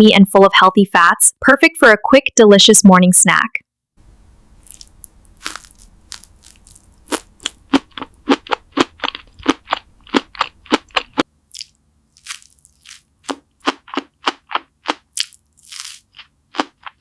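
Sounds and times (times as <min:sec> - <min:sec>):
crunching bites and chewing: 0:04.6 - 0:17.0.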